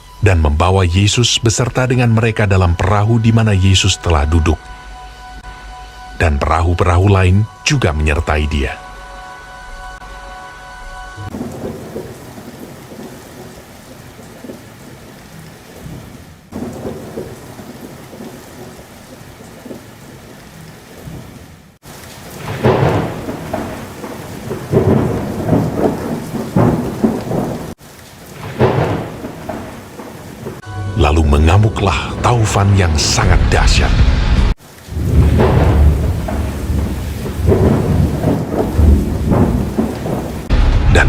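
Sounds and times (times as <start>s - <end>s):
heavy rain: 0.0s - 41.0s
rolling thunder: 11.3s - 14.9s, 15.8s - 20.0s, 21.0s - 30.7s, 31.7s - 41.0s.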